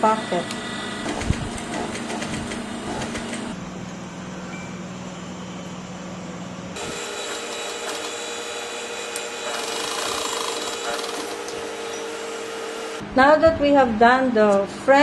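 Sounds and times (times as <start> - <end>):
sewing machine running: 6.8 - 13.0.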